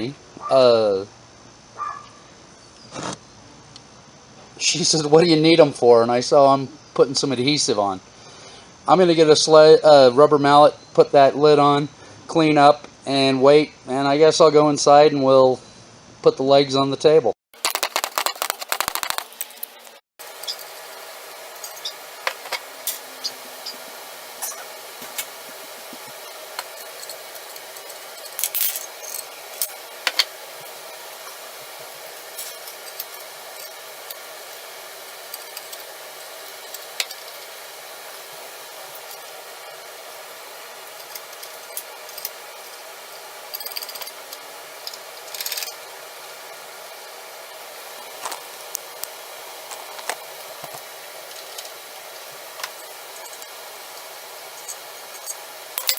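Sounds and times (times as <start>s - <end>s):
small tools clicking and knocking: 17.6s - 19.7s, 54.6s - 55.9s
steady hiss: 18.0s - 55.9s.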